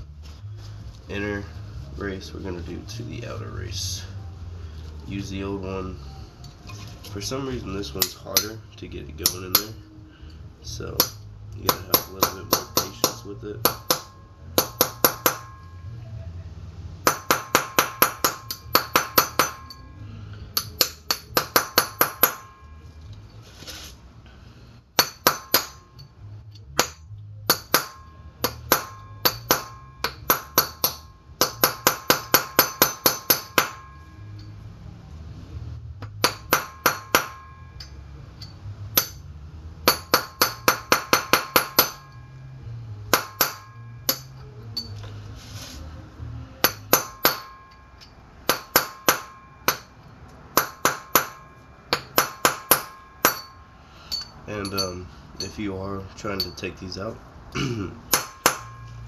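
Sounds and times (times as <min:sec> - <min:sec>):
hammer striking metal ringing: 0:07.8 - 0:09.9, 0:10.7 - 0:16.0, 0:17.0 - 0:22.9, 0:25.0 - 0:26.1, 0:26.7 - 0:34.6, 0:36.0 - 0:45.0, 0:46.6 - 0:55.6, 0:58.1 - 0:59.0.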